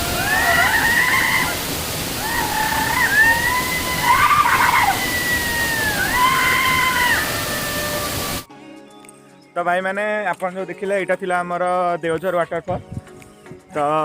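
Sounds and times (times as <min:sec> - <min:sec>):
waterfall rushing: 0:00.0 - 0:08.5.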